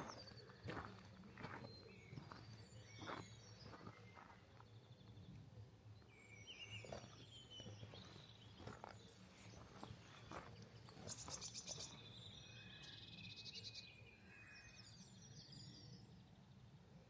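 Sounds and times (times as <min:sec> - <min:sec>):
soft footsteps: 0:00.0 - 0:04.6, 0:06.8 - 0:12.0
small birds chirping: 0:00.0 - 0:16.5.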